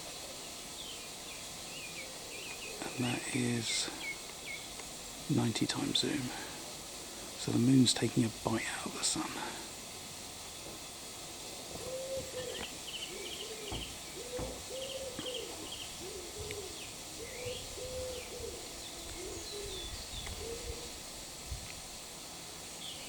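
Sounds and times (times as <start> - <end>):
songbird chirping and trilling: 0.4 - 4.8, 11.7 - 21.0
pigeon cooing: 11.7 - 21.0.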